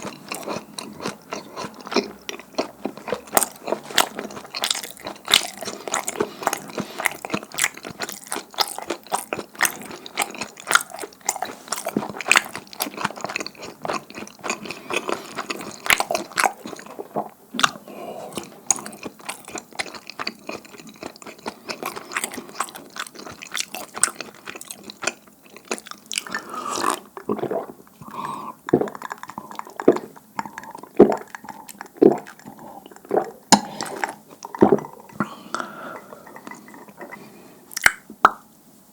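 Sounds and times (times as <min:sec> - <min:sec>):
close chewing of sticky food: 0:00.0 - 0:38.1.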